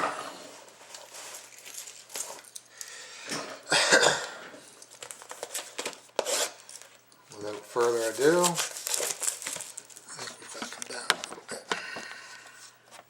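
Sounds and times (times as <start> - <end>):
rustling of card box: 0.5 - 2.4, 4.9 - 11.4.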